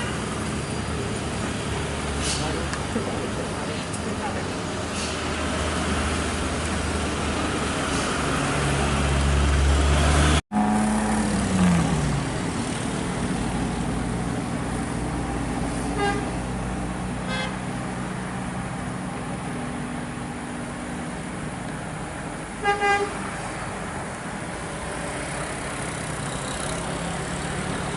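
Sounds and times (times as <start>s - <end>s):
heavy vehicle engine droning: 0.0s - 27.9s
short horn toots: 17.3s - 17.6s.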